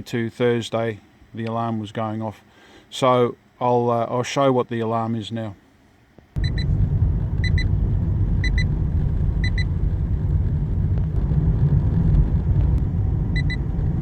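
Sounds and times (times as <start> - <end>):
short high alarm beeps: 6.4 - 6.7, 8.4 - 8.7
road and engine rumble: 6.4 - 14.0.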